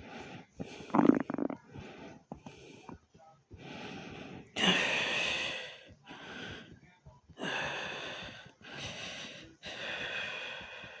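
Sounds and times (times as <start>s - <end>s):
fast heartbeat thumps: 0.0s - 11.0s
person breathing heavily: 0.0s - 11.0s.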